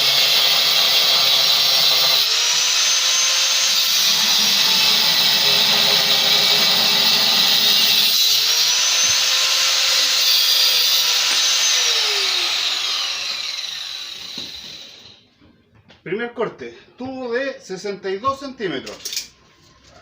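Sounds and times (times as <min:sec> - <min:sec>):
angle grinder cutting steel: 0:00.0 - 0:15.2.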